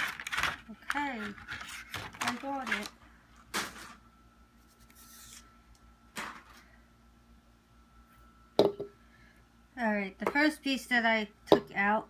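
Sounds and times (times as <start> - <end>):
packaging rustling and scraping: 0.0 - 5.5.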